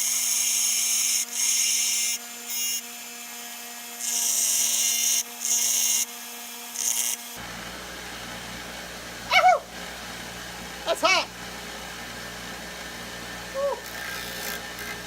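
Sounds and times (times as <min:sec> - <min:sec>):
grinder motor hum: 0:06.8 - 0:15.0.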